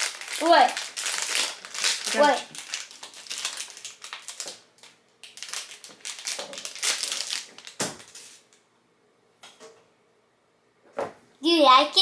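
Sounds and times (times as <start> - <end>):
plastic packaging crinkling: 0.0 - 8.6.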